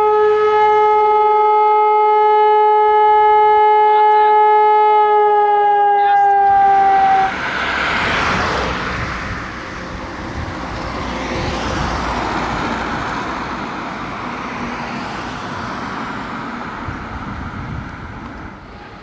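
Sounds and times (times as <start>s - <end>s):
cars passing by: 6.0s - 19.0s.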